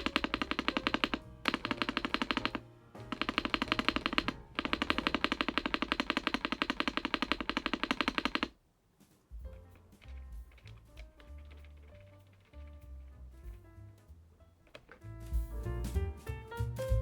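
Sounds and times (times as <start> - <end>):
background music: 0.0 - 6.2, 9.3 - 17.0
mechanical keyboard typing: 0.0 - 8.6.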